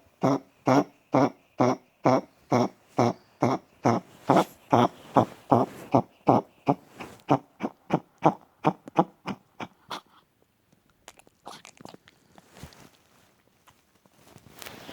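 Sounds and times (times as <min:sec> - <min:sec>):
small dog coughing: 0:00.2 - 0:10.1.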